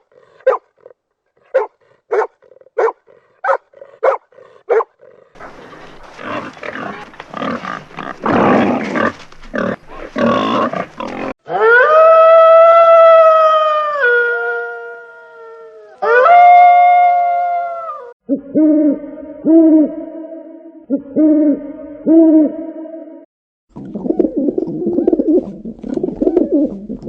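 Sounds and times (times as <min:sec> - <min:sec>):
rough animal grunting: 0:00.0 - 0:11.4.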